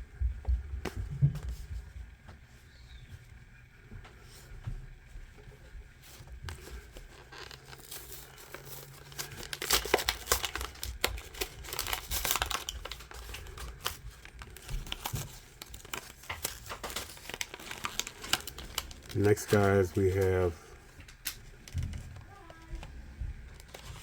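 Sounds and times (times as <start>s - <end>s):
packaging crinkling and tearing: 6.0s - 22.6s, 23.5s - 24.0s.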